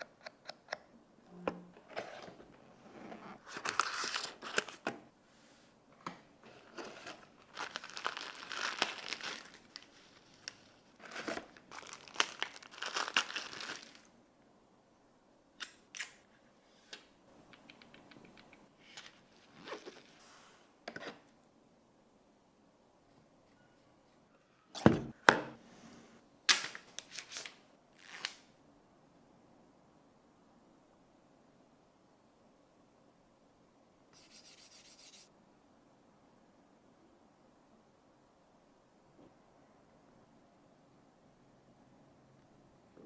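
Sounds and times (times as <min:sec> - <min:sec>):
packaging tearing and crinkling: 0:03.5 - 0:04.8, 0:06.8 - 0:14.1
sharp clicks and taps: 0:17.5 - 0:18.6.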